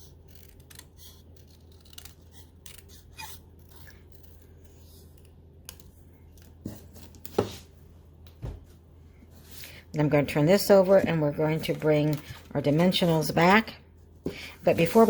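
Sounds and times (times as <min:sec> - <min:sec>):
scissors snipping paper: 0:00.0 - 0:06.6.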